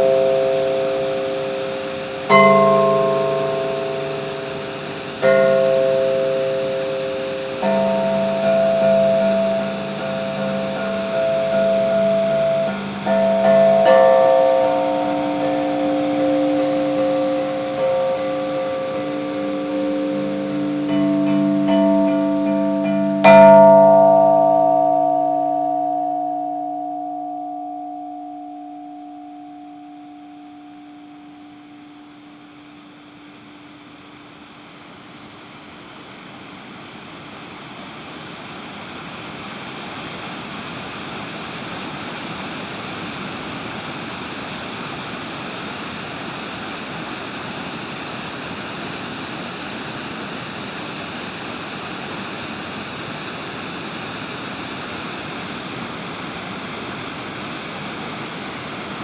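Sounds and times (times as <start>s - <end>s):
steady rushing noise: 0.0s - 26.8s
held tones: 0.0s - 33.4s.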